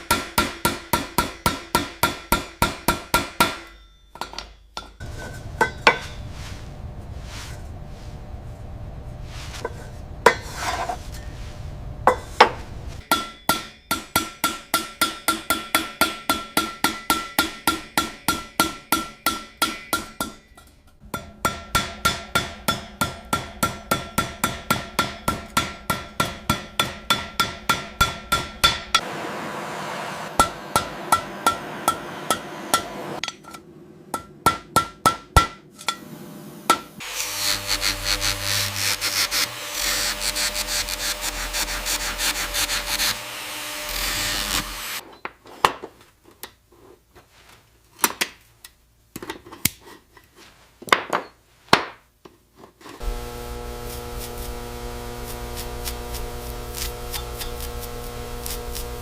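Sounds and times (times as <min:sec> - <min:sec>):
rubbing sound: 0:05.0 - 0:08.5, 0:09.1 - 0:13.0.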